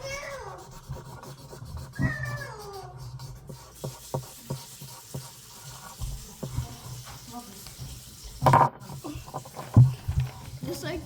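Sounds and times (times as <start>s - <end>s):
cat meowing: 0.0s - 0.6s, 2.0s - 2.9s.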